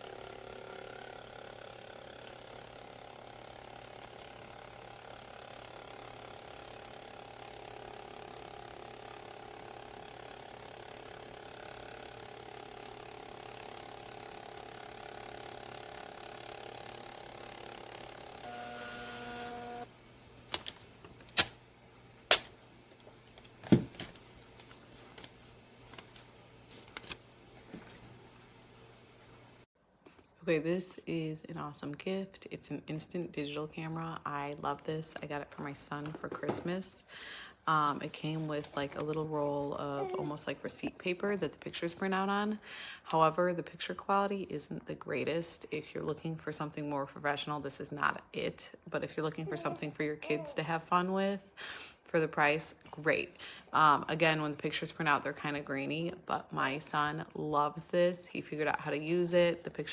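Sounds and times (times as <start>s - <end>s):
small motor whirring: 0.0s - 19.9s.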